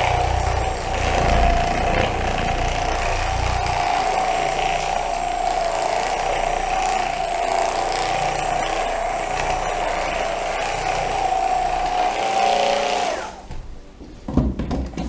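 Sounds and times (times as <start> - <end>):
massage gun whining: 0.0 - 13.6.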